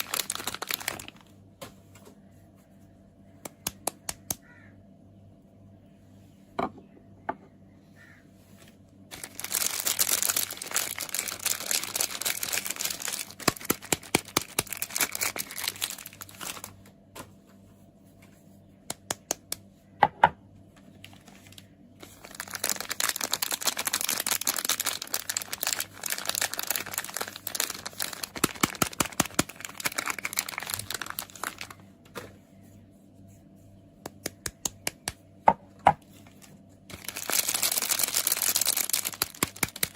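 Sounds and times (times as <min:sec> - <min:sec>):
wrapper crinkling and tearing: 0:00.0 - 0:01.3, 0:09.1 - 0:16.9, 0:21.0 - 0:31.8, 0:36.2 - 0:39.9.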